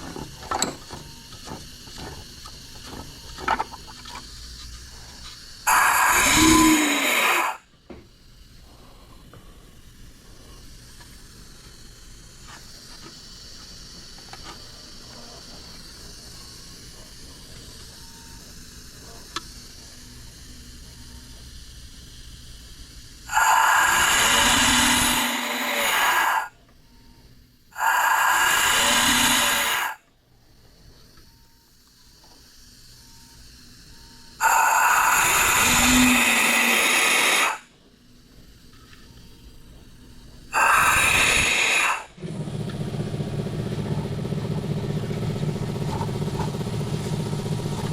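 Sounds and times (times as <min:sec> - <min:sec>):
compressed air hissing: 0:00.0 - 0:43.3
rushing air: 0:23.3 - 0:26.5, 0:40.5 - 0:42.5.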